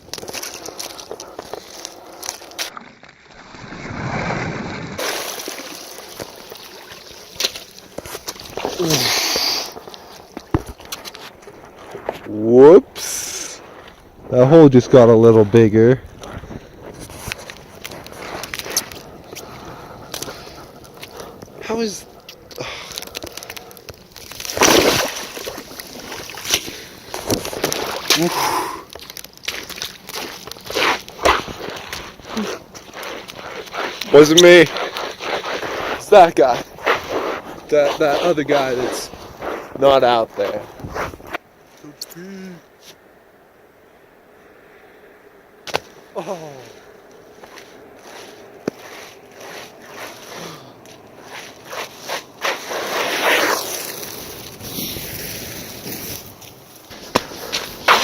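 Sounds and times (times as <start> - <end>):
ice knocking and cracking: 0.0 - 12.3, 22.5 - 39.1, 53.4 - 58.0
water sloshing and splashing: 5.0 - 8.8, 24.4 - 28.2.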